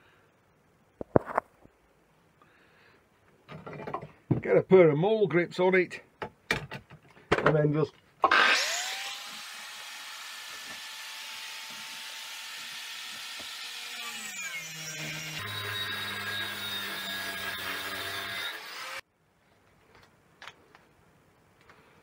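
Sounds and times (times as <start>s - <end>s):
power tool motor whining: 8.3s - 19.0s.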